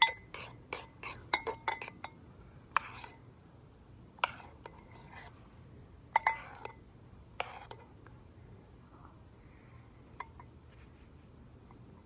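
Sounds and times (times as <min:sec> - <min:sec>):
spoon clinking against bowl: 0:00.0 - 0:02.2, 0:06.1 - 0:06.8.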